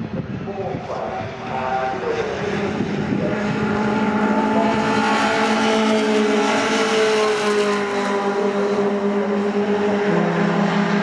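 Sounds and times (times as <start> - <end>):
racing truck engines passing: 1.0 - 11.0.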